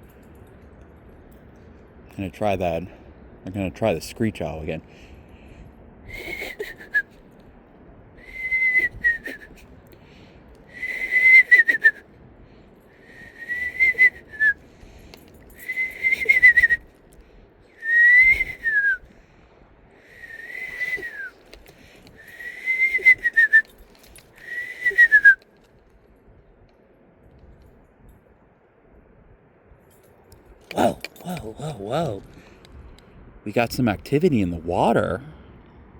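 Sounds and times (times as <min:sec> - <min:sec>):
man whistling owl calls: 0:06.1 - 0:07.2, 0:08.2 - 0:09.7, 0:10.7 - 0:12.1, 0:13.0 - 0:14.6, 0:15.5 - 0:16.9, 0:17.8 - 0:19.1, 0:20.0 - 0:21.5, 0:22.1 - 0:23.8, 0:24.4 - 0:25.5.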